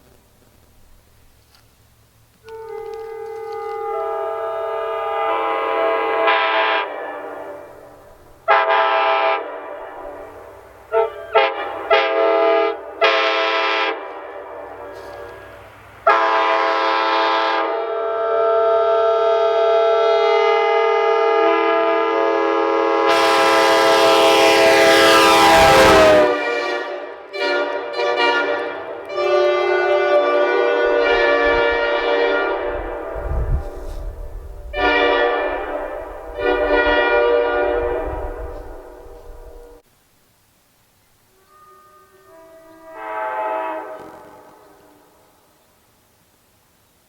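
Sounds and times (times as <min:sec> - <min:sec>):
train air horn blasts: 0:02.4 - 0:39.8, 0:41.3 - 0:45.4.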